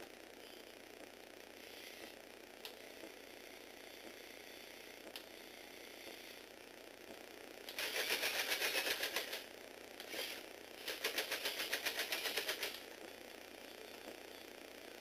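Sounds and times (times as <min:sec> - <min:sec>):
plastic gears clicking rapidly: 0:07.7 - 0:12.8.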